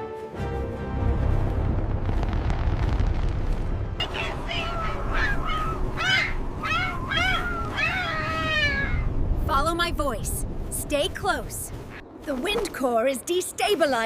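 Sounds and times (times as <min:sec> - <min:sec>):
low wind-like noise: 0:00.4 - 0:14.0
squawking bird calls: 0:04.0 - 0:09.2.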